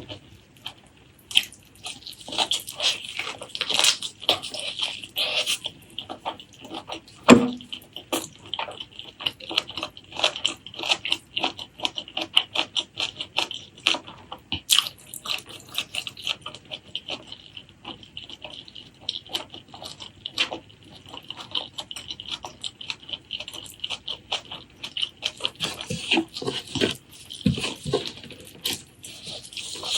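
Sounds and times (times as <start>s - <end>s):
wet chewing and mouth smacking: 0.0s - 29.9s
sharp knock: 7.3s - 7.7s.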